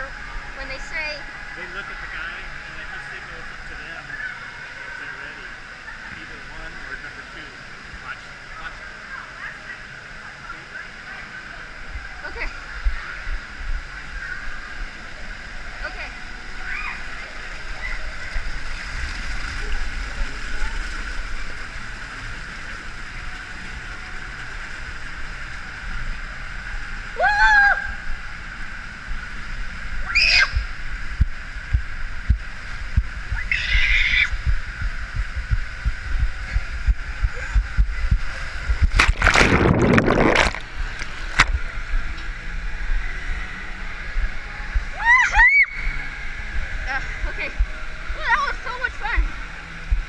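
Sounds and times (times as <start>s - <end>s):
loud rush of splashing water: 33.4s - 41.6s
splashing water: 38.1s - 41.7s.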